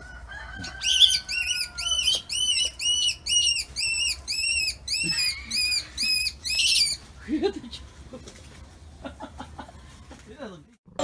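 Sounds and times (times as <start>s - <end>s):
high-pitched whistling calls: 0.8s - 7.4s.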